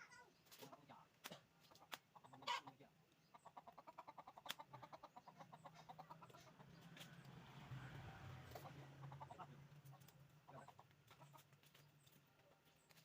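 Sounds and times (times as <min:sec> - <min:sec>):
faint fowl clucking: 0:01.6 - 0:06.9, 0:08.5 - 0:11.6.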